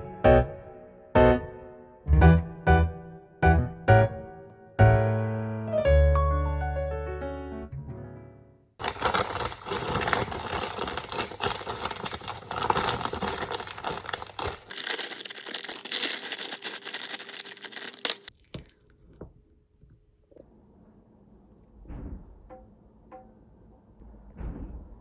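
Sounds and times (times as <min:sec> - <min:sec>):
dense crinkling and crackling: 0:08.8 - 0:18.9.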